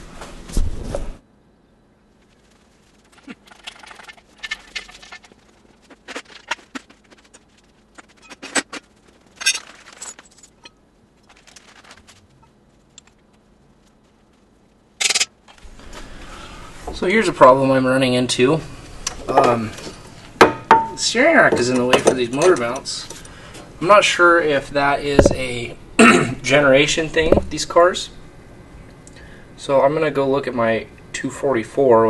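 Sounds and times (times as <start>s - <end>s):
metal clinks and scrapes: 6.1s - 12.4s.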